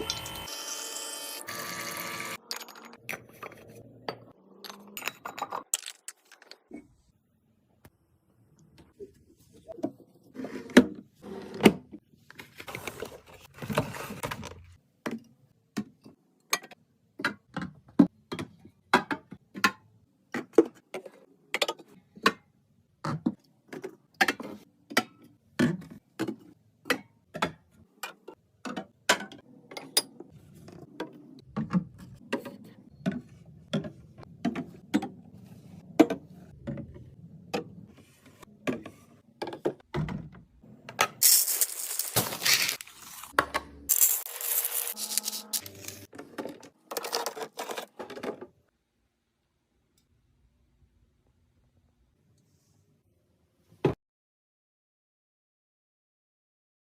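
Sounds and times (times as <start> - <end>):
packaging rustling: 41.2 - 43.3, 43.9 - 46.1.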